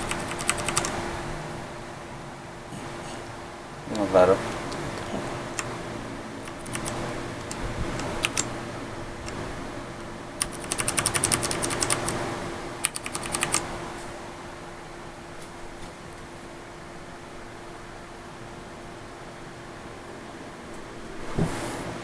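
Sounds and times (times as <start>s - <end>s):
mechanical keyboard typing: 0.0s - 1.0s, 6.4s - 8.5s, 10.4s - 12.2s, 12.8s - 13.7s.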